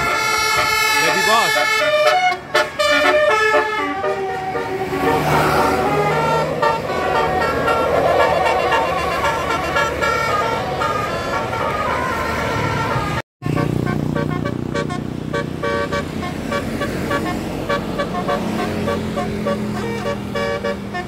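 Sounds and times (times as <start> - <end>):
bus engine: 0.0 - 21.0
multi-tone musical bus horn: 0.0 - 21.0.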